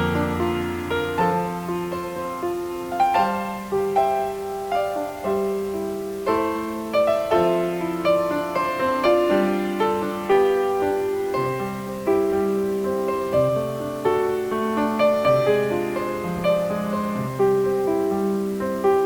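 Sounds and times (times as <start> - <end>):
slow gentle piano music: 0.0 - 19.0.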